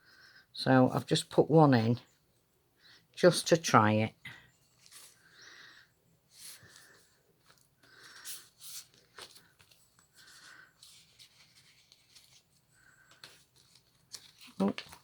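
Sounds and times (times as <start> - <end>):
paper pages rustling: 4.6 - 5.7, 6.3 - 15.0.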